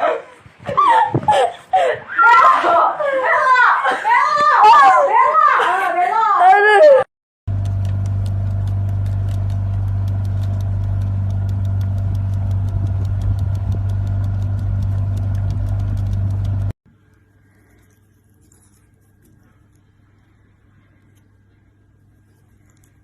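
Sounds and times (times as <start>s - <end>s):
machine hum: 7.5s - 16.8s
light ticking: 7.6s - 16.7s.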